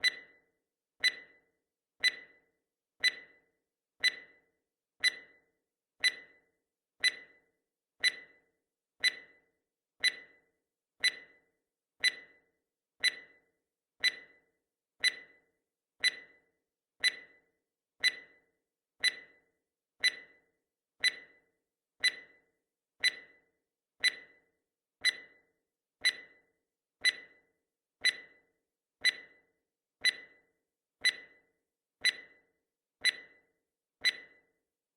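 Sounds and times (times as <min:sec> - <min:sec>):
timer ticking: 0:00.0 - 0:00.3, 0:01.0 - 0:01.3, 0:02.0 - 0:02.4, 0:03.0 - 0:03.4, 0:04.0 - 0:04.4, 0:05.0 - 0:05.4, 0:06.0 - 0:06.4, 0:07.0 - 0:07.4, 0:08.0 - 0:08.4, 0:09.0 - 0:09.4, 0:10.0 - 0:10.4, 0:11.0 - 0:11.4, 0:12.0 - 0:12.4, 0:13.0 - 0:13.4, 0:14.0 - 0:14.4, 0:15.0 - 0:15.4, 0:16.0 - 0:16.4, 0:17.0 - 0:17.4, 0:18.0 - 0:18.4, 0:19.0 - 0:19.4, 0:20.0 - 0:20.4, 0:21.0 - 0:21.3, 0:22.0 - 0:22.3, 0:23.0 - 0:23.4, 0:24.0 - 0:24.4, 0:26.0 - 0:26.4, 0:28.0 - 0:28.4, 0:29.0 - 0:29.4, 0:30.0 - 0:30.4, 0:31.0 - 0:31.4, 0:32.0 - 0:32.4, 0:33.0 - 0:33.4, 0:34.0 - 0:34.4.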